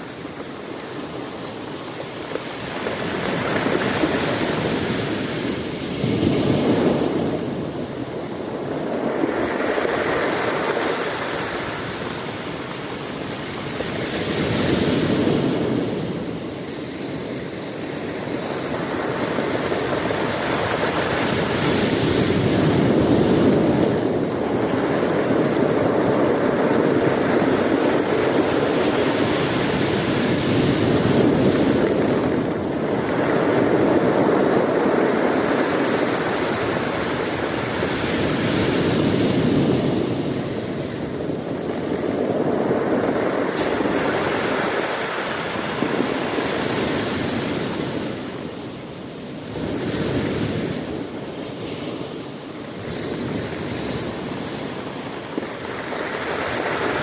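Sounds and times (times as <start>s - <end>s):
ocean waves breaking on shore: 0.0s - 57.0s.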